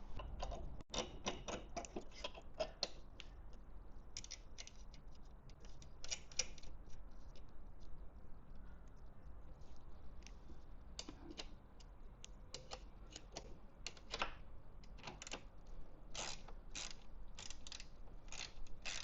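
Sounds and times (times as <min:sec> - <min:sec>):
zip ties ratcheting clicks: 0:16.2 - 0:19.0.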